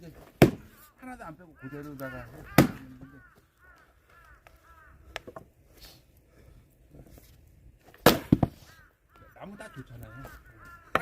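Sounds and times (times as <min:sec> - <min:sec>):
crows cawing: 0:00.6 - 0:06.6, 0:08.4 - 0:11.0.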